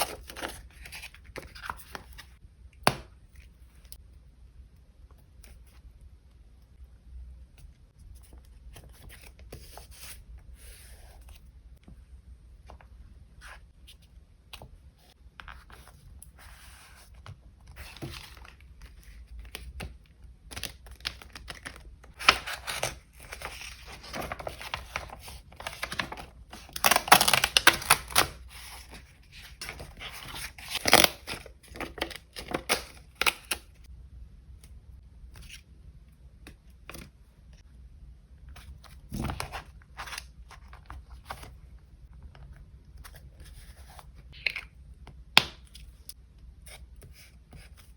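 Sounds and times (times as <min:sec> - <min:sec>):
paper rustling and tearing: 0:20.6 - 0:32.8.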